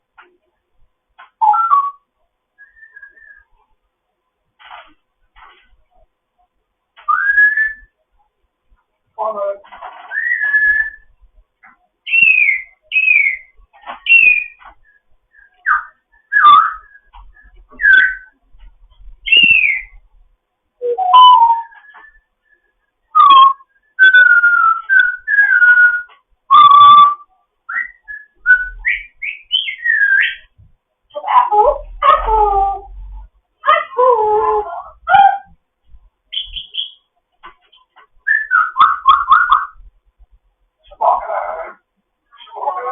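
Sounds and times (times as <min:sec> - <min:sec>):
parrot whistling: 0:01.4 - 0:02.0, 0:02.6 - 0:03.5, 0:07.1 - 0:07.9, 0:10.1 - 0:11.1, 0:12.1 - 0:18.4, 0:19.2 - 0:19.9, 0:20.8 - 0:22.3, 0:23.1 - 0:30.5, 0:36.3 - 0:37.0, 0:38.2 - 0:39.8
parrot chattering: 0:40.8 - 0:42.9.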